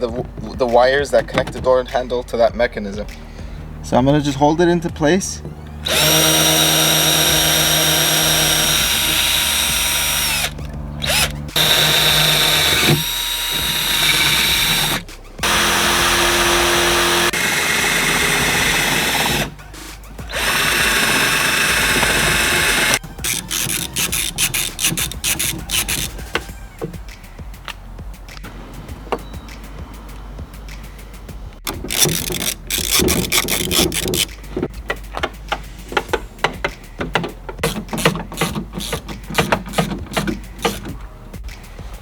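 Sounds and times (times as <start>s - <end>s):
power drill drilling through metal: 5.8s - 19.6s, 20.3s - 26.4s, 31.7s - 34.3s, 37.6s - 40.9s.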